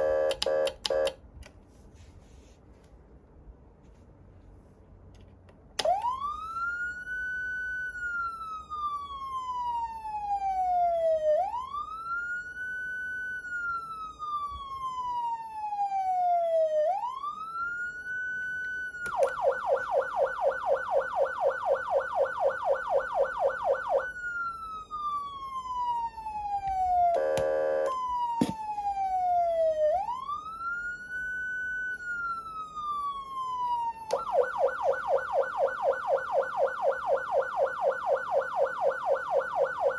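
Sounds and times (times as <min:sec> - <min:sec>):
click: 0:00.3 - 0:01.6, 0:19.0 - 0:19.4
siren wail: 0:05.8 - 0:39.9
siren fast yelp: 0:19.0 - 0:39.9.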